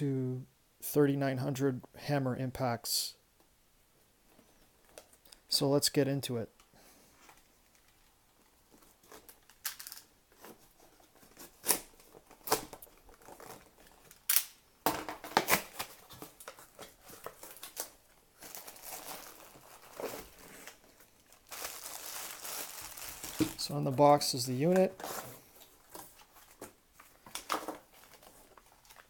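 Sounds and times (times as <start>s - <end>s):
packaging crinkling: 15.4s - 24.0s.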